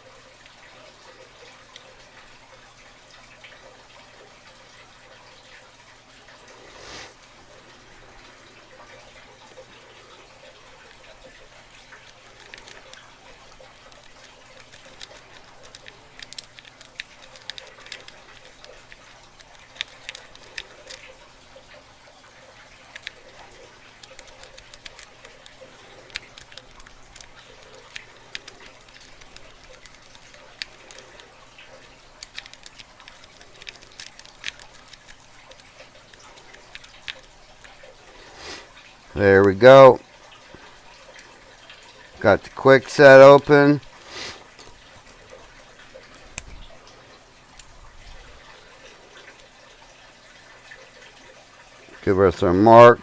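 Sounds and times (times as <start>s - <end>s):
lock pick clicking and scraping: 12.0s - 21.0s, 24.0s - 31.3s, 32.2s - 37.4s.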